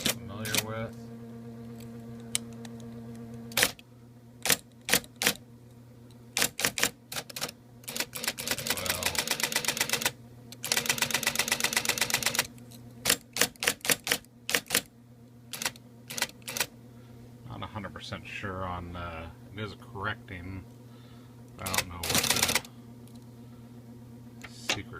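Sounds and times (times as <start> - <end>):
electric typewriter motor hum: 0.0 - 5.4, 6.3 - 14.9, 15.5 - 16.7, 21.6 - 23.2.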